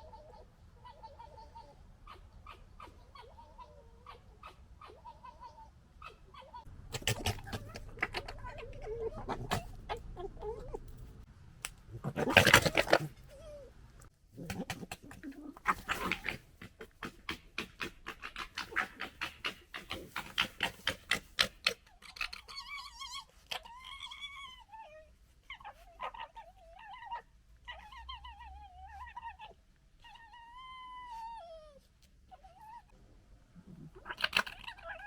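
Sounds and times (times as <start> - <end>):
high wavering fox whines: 0.0 - 11.0
foxes gekkering: 0.0 - 32.9, 33.6 - 35.0.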